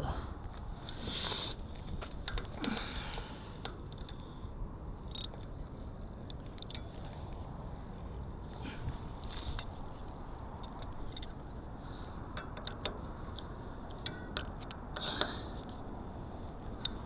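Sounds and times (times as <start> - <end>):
steady low rumble: 0.0 - 17.0
light metallic clicks and taps: 12.3 - 15.8, 16.8 - 17.0.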